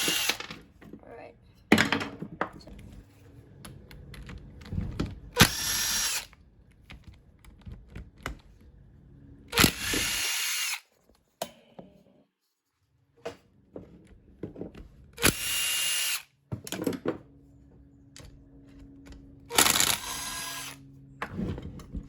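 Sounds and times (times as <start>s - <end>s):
electric drill running: 0.0s - 0.5s, 5.4s - 6.4s, 9.5s - 10.9s, 15.2s - 16.3s, 19.5s - 20.9s
parts clicking and knocking: 0.0s - 8.9s.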